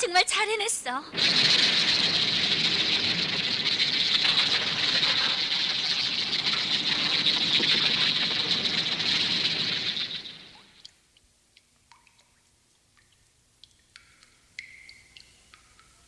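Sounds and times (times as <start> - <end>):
cartoon rushing floodwater: 1.1 - 10.8.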